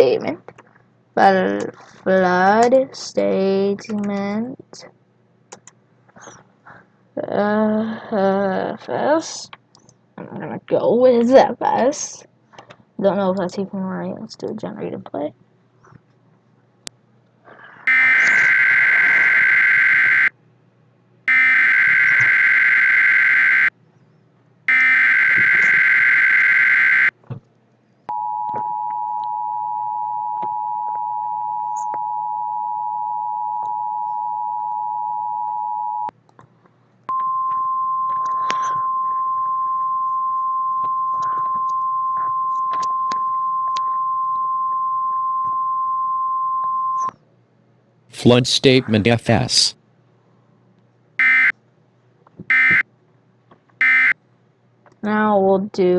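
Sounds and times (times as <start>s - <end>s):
steady warning tone: 17.8s - 20.3s, 21.3s - 23.7s, 24.7s - 27.2s, 51.2s - 51.6s, 52.5s - 52.8s, 53.8s - 54.2s
two-tone attention signal: 17.9s - 20.3s, 52.5s - 52.8s, 53.8s - 54.2s
warbling digital data bursts: 17.9s - 20.3s, 24.7s - 27.1s.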